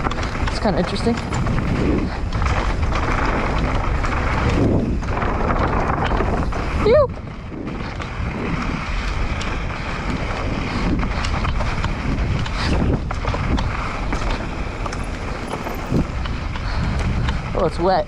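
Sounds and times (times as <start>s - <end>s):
bike knocks and rattles: 0.0s - 6.8s, 11.2s - 17.2s
tyres rolling on dirt: 0.0s - 17.5s
wind over microphone: 0.0s - 18.0s.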